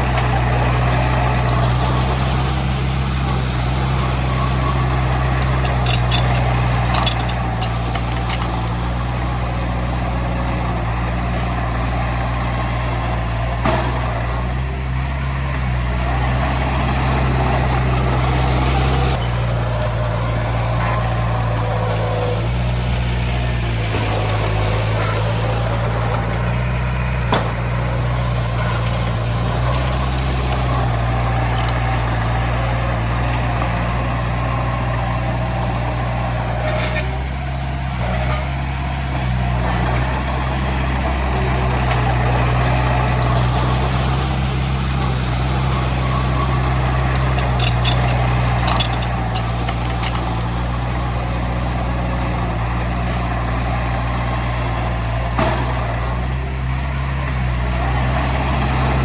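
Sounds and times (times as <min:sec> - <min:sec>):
heavy diesel machinery running: 0:00.0 - 0:59.0
metallic clicks and squeaks: 0:03.4 - 0:08.8, 0:36.1 - 0:37.2, 0:45.0 - 0:50.6.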